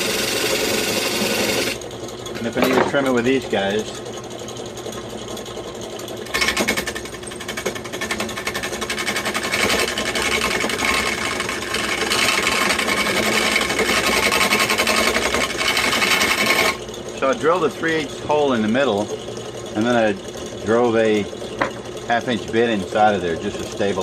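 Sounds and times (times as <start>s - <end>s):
chisel chattering on turning wood: 6.3s - 16.8s.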